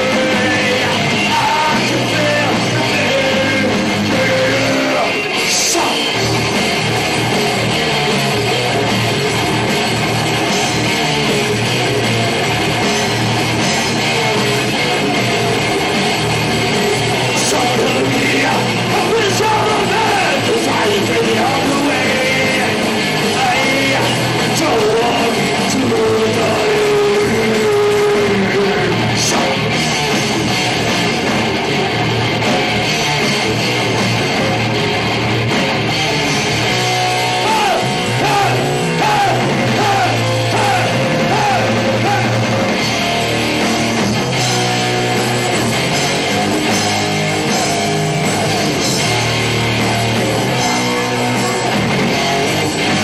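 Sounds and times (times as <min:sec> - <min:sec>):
shouted sung vocals: 0:00.0 - 0:06.2, 0:17.4 - 0:29.6, 0:37.4 - 0:42.4
live thrash metal band: 0:00.0 - 0:53.0
bending guitar notes: 0:26.9 - 0:53.0.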